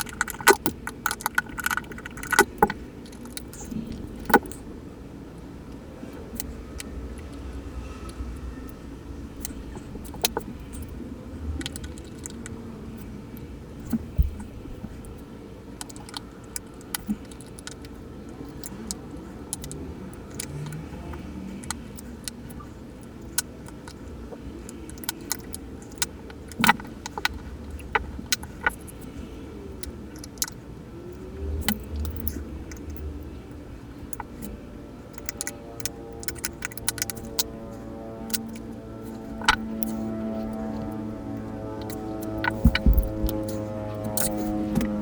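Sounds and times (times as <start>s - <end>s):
watch parts clicking and clinking: 0.0s - 4.7s, 34.0s - 40.9s, 41.8s - 44.9s.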